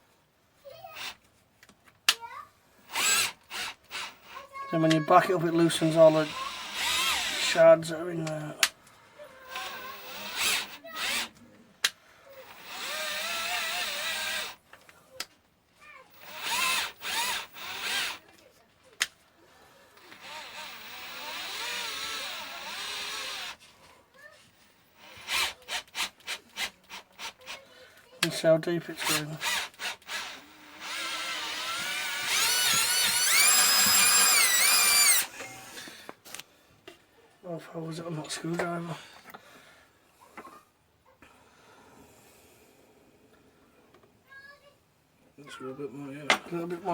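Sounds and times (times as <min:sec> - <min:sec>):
electric drill whirring: 0:00.9 - 0:01.2, 0:02.8 - 0:07.9, 0:09.4 - 0:11.3, 0:12.3 - 0:14.6, 0:16.1 - 0:18.3, 0:20.0 - 0:23.6, 0:25.0 - 0:27.6, 0:28.9 - 0:36.0.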